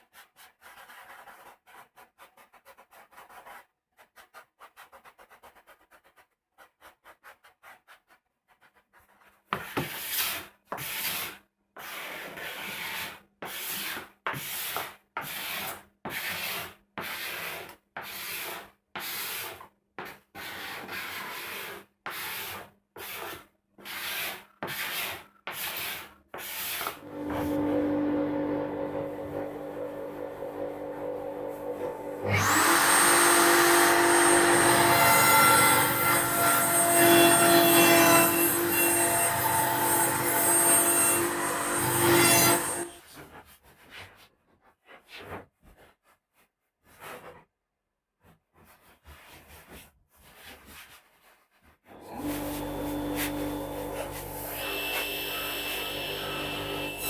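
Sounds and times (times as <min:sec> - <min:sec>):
hand tool working wood: 0:30.2 - 0:43.0.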